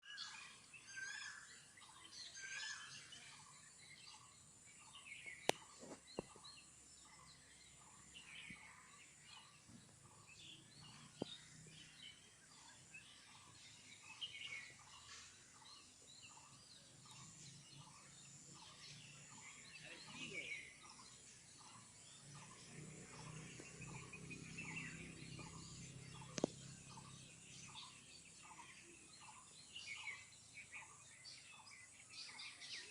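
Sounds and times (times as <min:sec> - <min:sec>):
birds chirping: 0:00.0 - 0:32.9
sharp clicks: 0:26.3 - 0:26.6.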